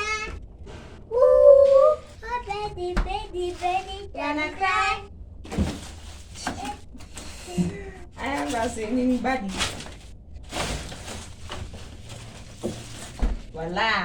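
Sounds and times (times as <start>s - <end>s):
child singing: 1.9s - 5.1s.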